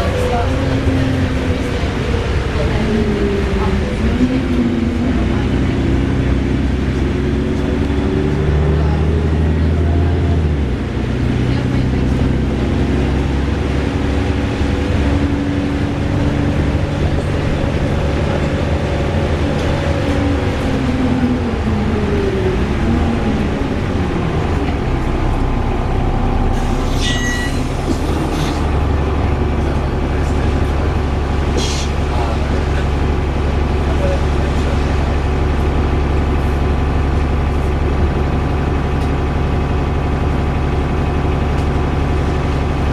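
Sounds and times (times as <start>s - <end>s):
bus engine whirring drone: 0.0s - 42.9s
brief high tone: 26.1s - 27.8s.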